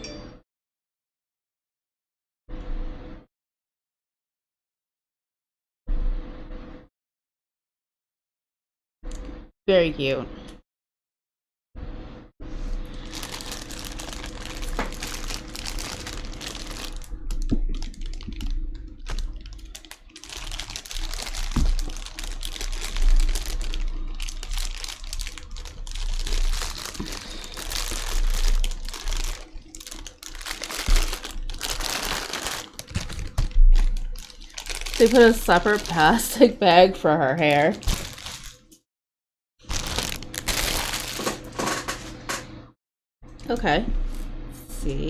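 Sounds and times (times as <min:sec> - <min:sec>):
plastic packaging crinkling: 0:12.9 - 0:38.8, 0:39.6 - 0:42.3.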